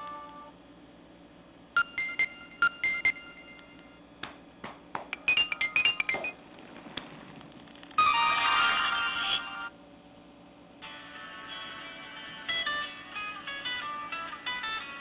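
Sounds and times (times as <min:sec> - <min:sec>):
electronic ringtone beeps: 0:01.8 - 0:03.9, 0:05.2 - 0:06.4.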